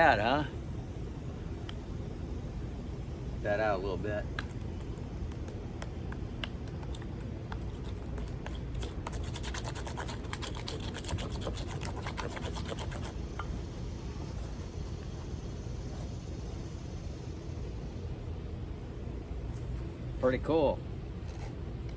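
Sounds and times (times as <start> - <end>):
steady low rumble: 0.0 - 21.9
campfire crackling: 4.2 - 9.0.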